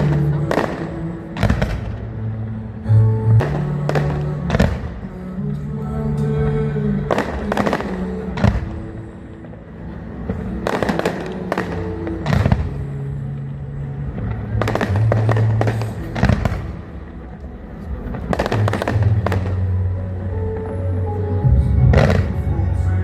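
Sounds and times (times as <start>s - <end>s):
fireworks bangs and crackle: 0.0s - 2.2s, 3.4s - 5.4s, 7.0s - 19.9s, 21.5s - 22.6s
music with low sustained notes: 0.0s - 23.0s.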